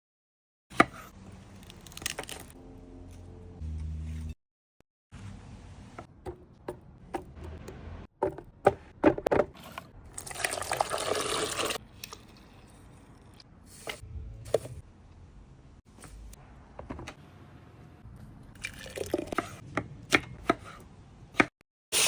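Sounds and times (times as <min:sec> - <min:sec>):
liquid being poured: 0:10.2 - 0:12.8, 0:18.6 - 0:19.3.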